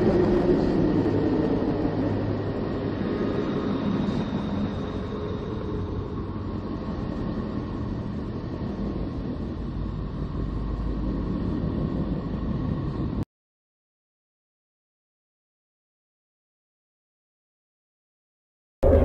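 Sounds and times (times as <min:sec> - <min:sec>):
low electronic drone: 0:00.0 - 0:13.2.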